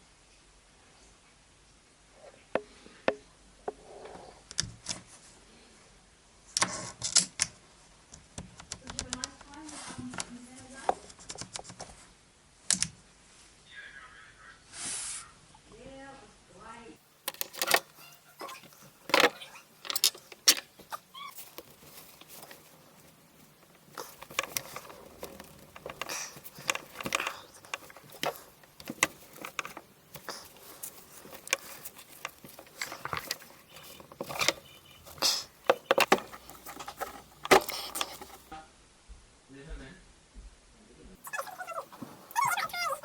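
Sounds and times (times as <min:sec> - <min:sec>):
plastic clicks and scrapes: 0:17.2 - 0:38.5.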